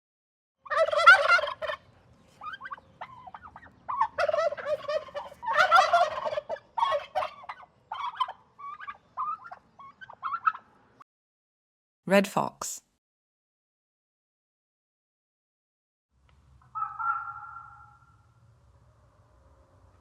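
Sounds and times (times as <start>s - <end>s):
short turkey calls: 0.6s - 1.8s, 2.4s - 10.6s, 16.6s - 18.2s
turkey gobbling: 0.6s - 10.7s, 16.6s - 18.3s.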